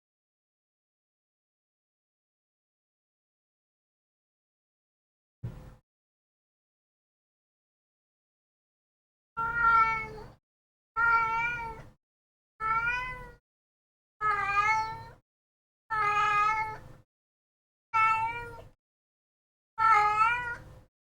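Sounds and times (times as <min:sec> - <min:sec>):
cat meowing: 0:09.4 - 0:10.3, 0:11.0 - 0:11.8, 0:12.6 - 0:13.4, 0:14.2 - 0:15.2, 0:15.9 - 0:16.8, 0:18.0 - 0:18.8, 0:19.8 - 0:20.6.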